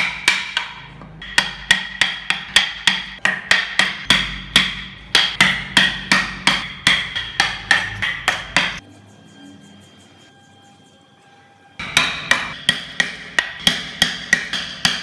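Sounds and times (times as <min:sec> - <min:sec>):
hammer striking with metallic ring: 0:00.0 - 0:08.8, 0:11.8 - 0:15.0.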